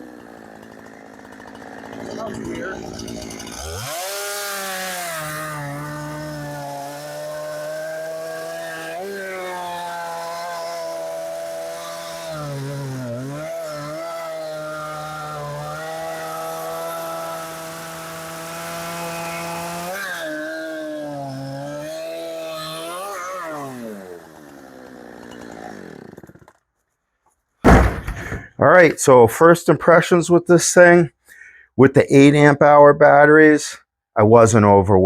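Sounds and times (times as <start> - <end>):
chainsaw motor winding down: 0.0 - 26.6
chainsaw cutting wood: 0.0 - 26.7, 27.6 - 28.5.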